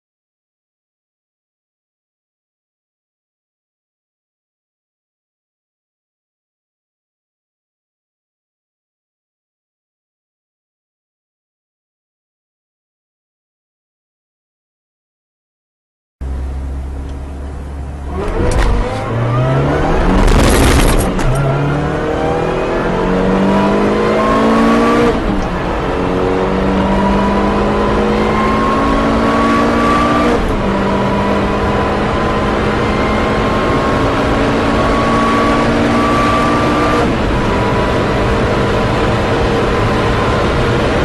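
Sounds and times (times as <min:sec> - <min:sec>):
car engine accelerating hard: 0:16.2 - 0:41.0
loud rushing burst: 0:18.6 - 0:21.8.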